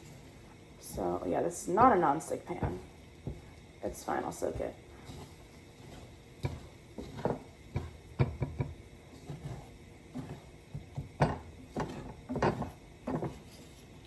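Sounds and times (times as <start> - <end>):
utensil scraping frying pan: 0.0 - 14.0.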